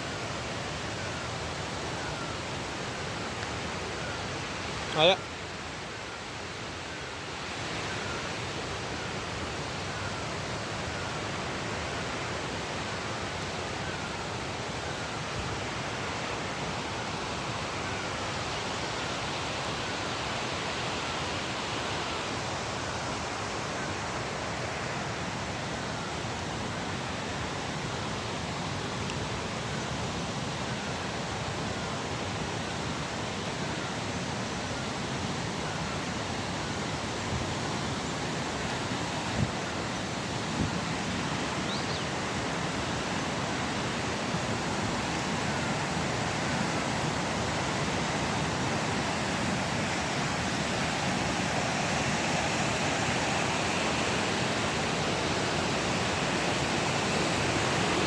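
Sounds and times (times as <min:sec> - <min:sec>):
fast-flowing water rushing: 0:00.0 - 0:58.0.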